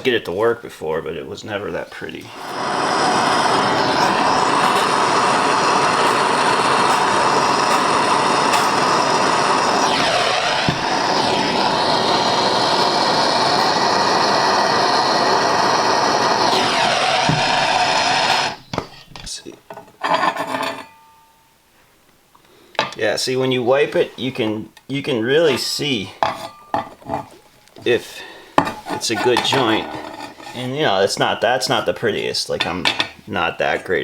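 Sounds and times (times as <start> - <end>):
torch flame hissing: 2.1 - 18.8.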